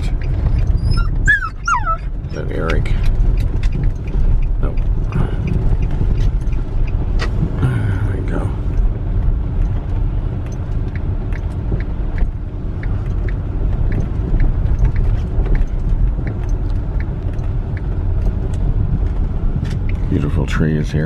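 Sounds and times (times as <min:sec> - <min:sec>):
car engine and tyres rumbling: 0:00.0 - 0:21.0
faint light ticks: 0:02.6 - 0:07.5, 0:08.4 - 0:20.1.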